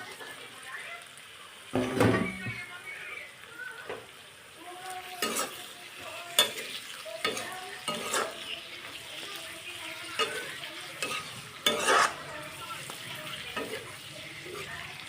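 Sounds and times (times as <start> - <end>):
chicken sizzling in a pan: 0.0 - 15.0
spoon scraping and knocking pan: 5.2 - 9.3, 10.0 - 14.7.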